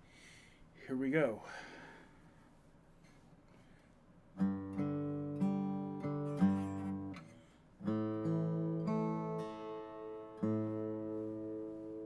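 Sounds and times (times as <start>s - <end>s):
acoustic guitar chords strummed: 4.4s - 12.0s.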